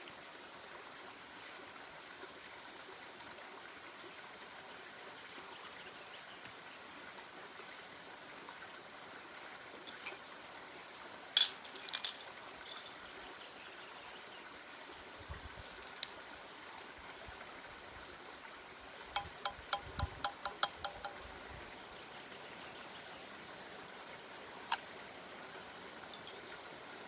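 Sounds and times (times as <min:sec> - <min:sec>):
light ringing clinks: 0:09.9 - 0:10.2, 0:11.4 - 0:13.0, 0:26.1 - 0:26.5.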